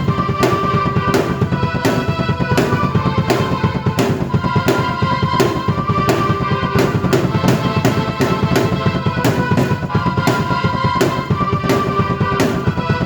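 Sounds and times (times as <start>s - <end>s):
drum kit beat: 0.0s - 13.0s.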